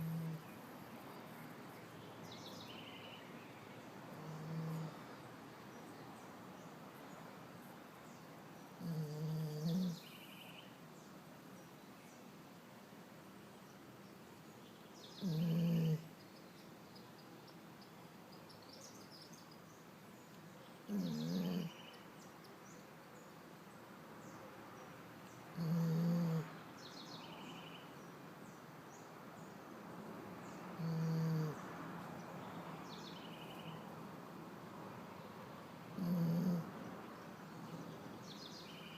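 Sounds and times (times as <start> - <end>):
dog snoring: 0.0 - 0.5, 4.2 - 5.0, 8.8 - 10.0, 15.2 - 16.1, 20.9 - 21.8, 25.6 - 26.5, 30.8 - 31.6, 36.0 - 36.7
songbirds chirping: 0.0 - 38.9.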